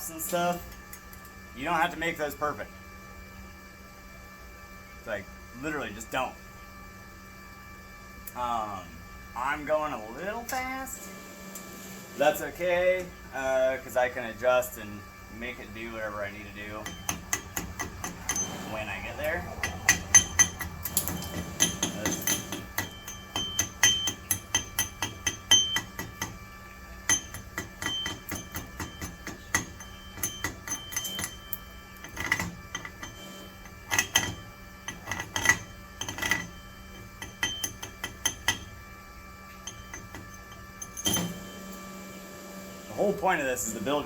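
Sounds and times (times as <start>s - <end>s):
hammer tapping steel plate: 19.6s - 26.4s, 27.1s - 31.4s.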